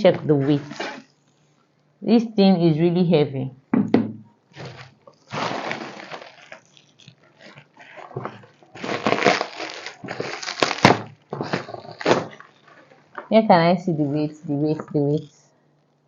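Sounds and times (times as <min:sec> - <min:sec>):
cardboard packaging rustling: 0:00.3 - 0:01.1, 0:04.6 - 0:13.3.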